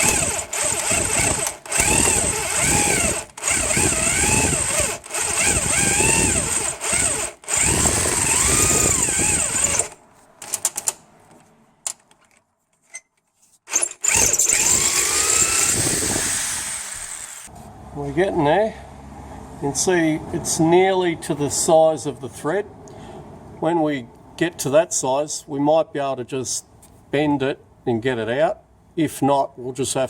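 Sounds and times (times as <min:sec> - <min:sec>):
power drill boring into bolt: 0:00.0 - 0:10.0, 0:13.7 - 0:17.5.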